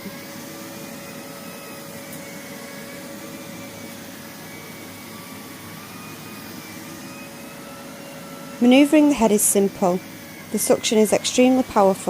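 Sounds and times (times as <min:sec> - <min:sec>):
vacuum cleaner running on carpet: 0:00.0 - 0:12.0.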